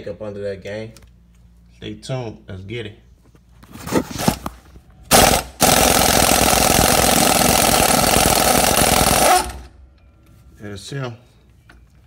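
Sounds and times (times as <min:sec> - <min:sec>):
impact wrench hammering: 0:05.1 - 0:09.8.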